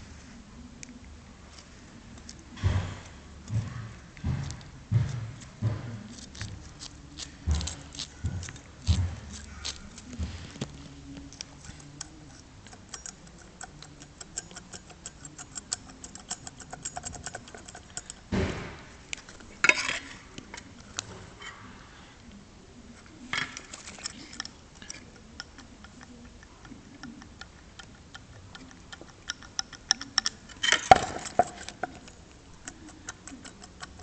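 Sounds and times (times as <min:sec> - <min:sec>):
metallic clicks and knocks: 0:11.5 - 0:21.1, 0:23.3 - 0:34.0.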